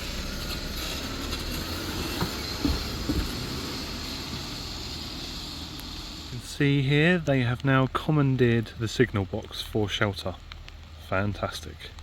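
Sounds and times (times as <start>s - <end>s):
train rumbling: 0.0s - 6.3s.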